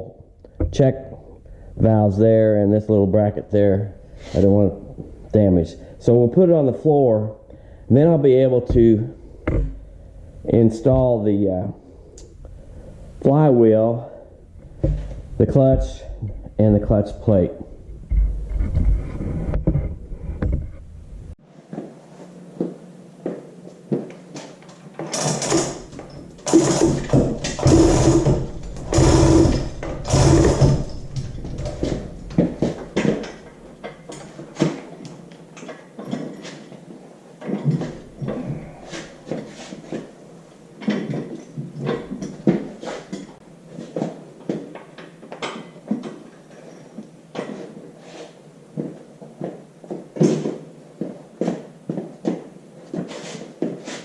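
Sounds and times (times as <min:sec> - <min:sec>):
loud metallic rattling: 0:25.1 - 0:33.5.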